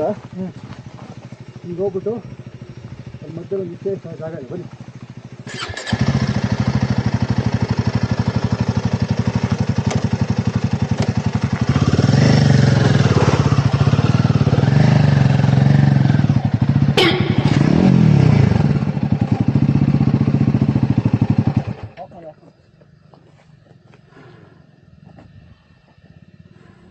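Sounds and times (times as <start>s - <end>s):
motorcycle engine throbbing: 0.0s - 23.2s
sharp knock: 17.0s - 18.8s.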